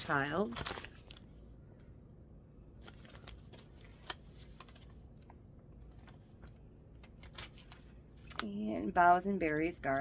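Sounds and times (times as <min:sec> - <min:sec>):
glossy magazine pages rustling: 0:00.0 - 0:01.6, 0:02.7 - 0:08.6.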